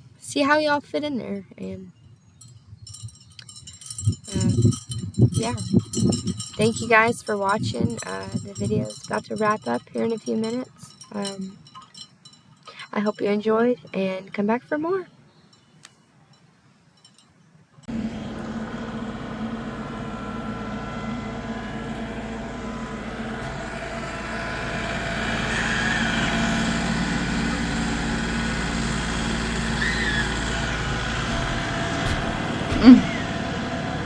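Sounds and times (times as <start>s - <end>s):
motor droning: 17.9s - 34.0s.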